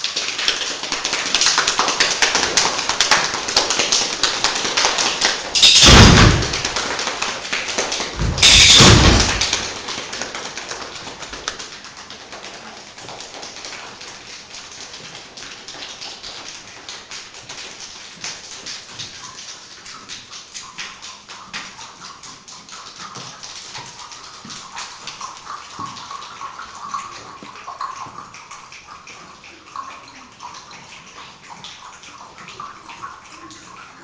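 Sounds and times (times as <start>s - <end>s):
group making rainstorm sounds: 0.0s - 34.0s
loud crashes: 5.6s - 6.9s, 8.2s - 9.8s.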